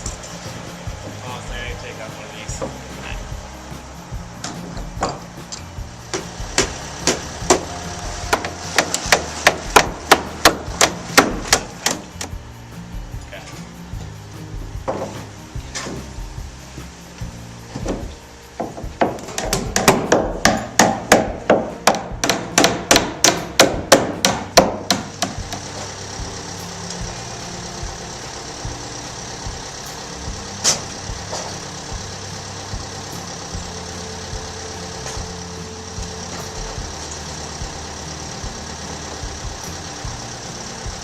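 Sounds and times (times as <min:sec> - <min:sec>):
steady background hum: 0:00.0 - 0:41.0
hammer nailing boards: 0:06.1 - 0:12.3, 0:14.9 - 0:16.1, 0:17.8 - 0:25.7.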